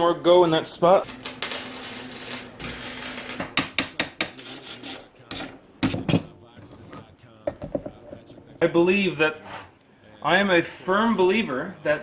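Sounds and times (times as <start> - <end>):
welder arc sputtering and crackling: 1.0 - 3.6.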